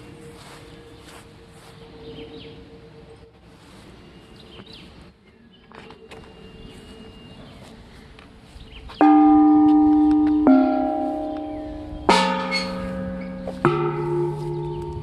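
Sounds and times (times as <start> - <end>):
faint outdoor background: 0.0 - 15.0
metal gong ringing: 9.0 - 15.0.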